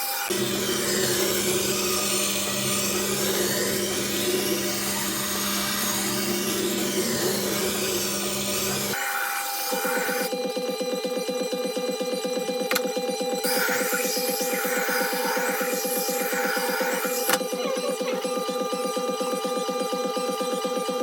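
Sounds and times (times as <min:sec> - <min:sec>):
grinder motor hum: 0:00.0 - 0:21.0
steel grinding on stone: 0:00.3 - 0:10.3.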